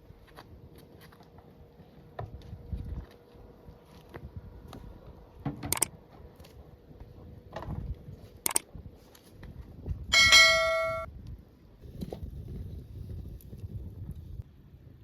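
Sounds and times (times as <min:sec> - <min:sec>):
sharp clicks and knocks: 0:05.5 - 0:05.9, 0:08.4 - 0:08.7
metal ringing bell-like: 0:10.1 - 0:11.1.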